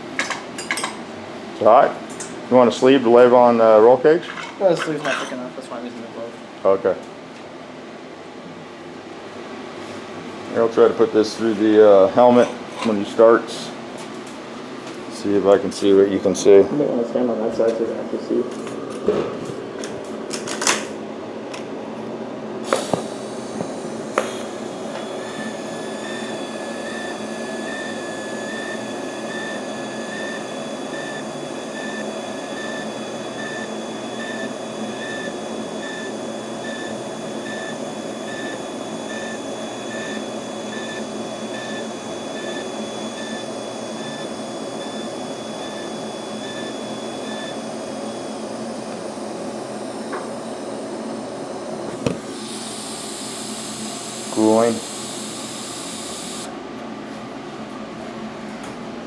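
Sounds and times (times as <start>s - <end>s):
welding arc buzzing hiss: 22.6s - 56.6s
pulsing high tone: 22.8s - 56.5s.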